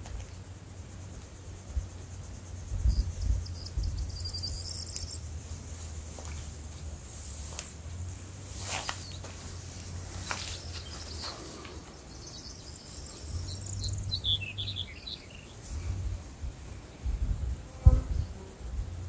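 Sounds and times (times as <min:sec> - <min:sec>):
insects: 0:00.0 - 0:19.0
birds chirping: 0:02.8 - 0:06.5, 0:08.7 - 0:16.1.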